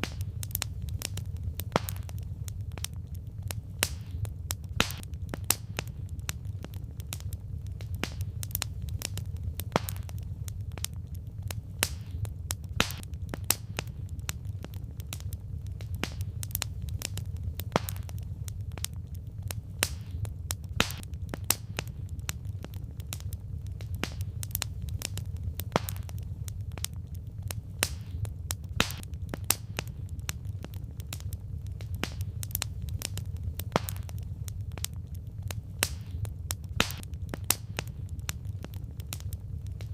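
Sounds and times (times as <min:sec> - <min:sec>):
firewood crackling and popping: 0:00.0 - 0:39.9
steady low rumble: 0:00.0 - 0:39.9.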